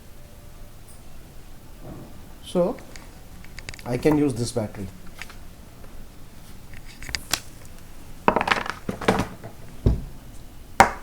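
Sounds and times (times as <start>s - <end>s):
small hard objects clattering: 6.6s - 9.9s
dull knock on table: 8.3s - 10.2s.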